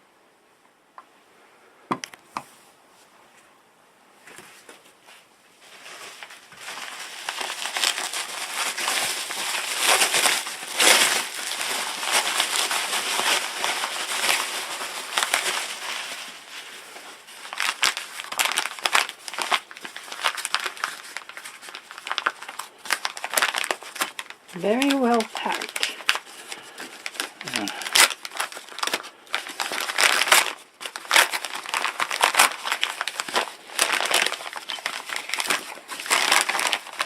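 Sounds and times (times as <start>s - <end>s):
packing material crinkling: 5.6s - 37.0s.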